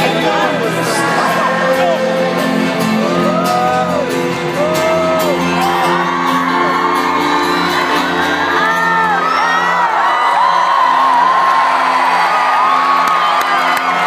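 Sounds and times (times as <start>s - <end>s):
live band music: 0.0s - 9.5s
crowd whooping and singing: 0.0s - 14.0s.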